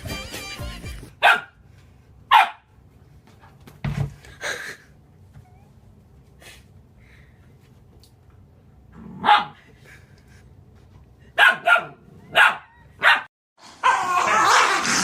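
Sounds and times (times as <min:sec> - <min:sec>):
dog barking: 0:01.2 - 0:01.6, 0:02.3 - 0:02.7, 0:09.2 - 0:09.6, 0:11.4 - 0:14.8.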